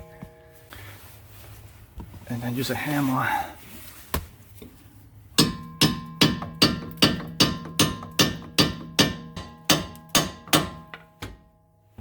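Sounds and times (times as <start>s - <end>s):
hammer striking steel bolt: 5.4s - 11.5s.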